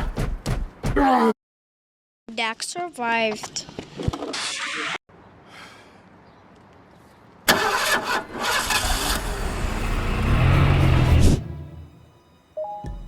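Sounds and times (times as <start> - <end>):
car engine starting: 7.5 - 11.9.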